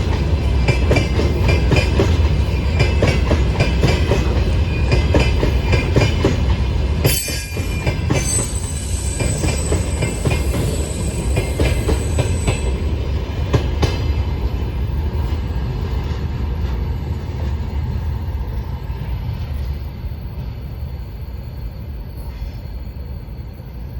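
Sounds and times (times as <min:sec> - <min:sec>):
train wheels clacking on rails: 0:00.0 - 0:18.2
train rumble: 0:00.0 - 0:23.9
high wheel squeal: 0:07.0 - 0:13.2.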